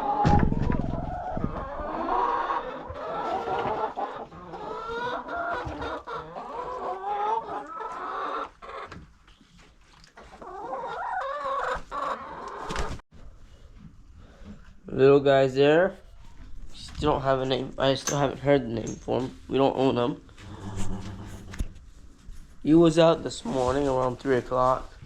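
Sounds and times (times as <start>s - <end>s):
chickens clucking: 0.0s - 13.0s, 16.0s - 22.4s.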